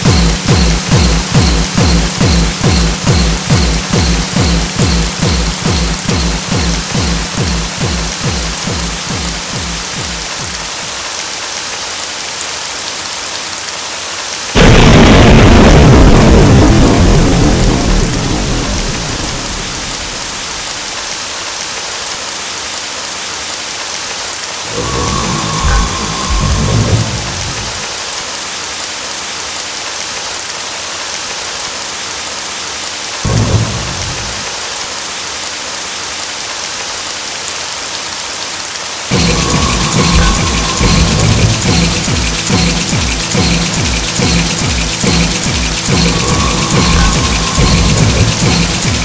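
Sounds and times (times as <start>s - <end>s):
heavy rain hissing: 0.0s - 49.0s
low rumbles of thunder: 14.6s - 20.8s, 24.7s - 28.0s
loud dense noise: 14.6s - 21.1s, 24.6s - 28.2s, 39.1s - 49.0s.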